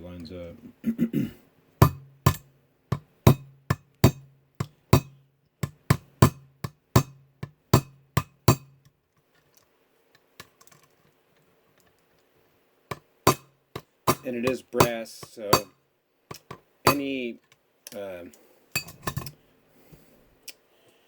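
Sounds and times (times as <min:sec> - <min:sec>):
hammer tapping brass rivet: 0:01.8 - 0:08.9, 0:12.9 - 0:17.2.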